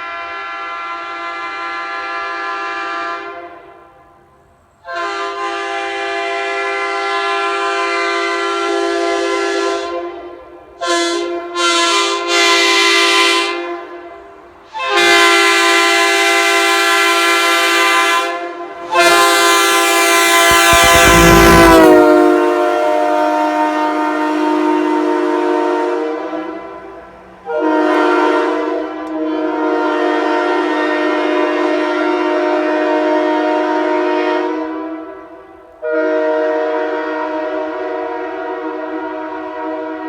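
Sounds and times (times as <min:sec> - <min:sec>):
locomotive air horn blasts: 0:19.7 - 0:26.6, 0:27.5 - 0:35.2, 0:35.8 - 0:40.0.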